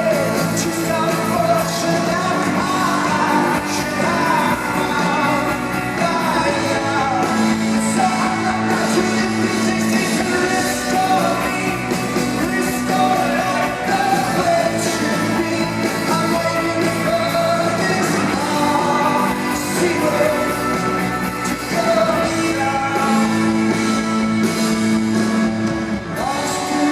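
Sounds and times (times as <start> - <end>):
lead singer singing: 0.0 - 26.9
live rock band playing: 0.0 - 26.9.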